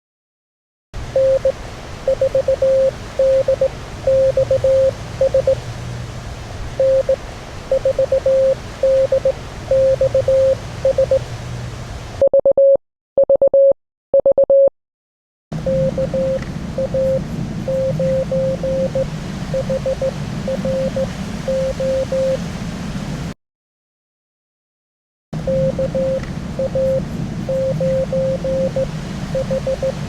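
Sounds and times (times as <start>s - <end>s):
morse code tone: 1.2s - 5.6s, 6.8s - 11.3s, 12.2s - 14.7s, 15.6s - 22.4s, 25.4s - 30.0s.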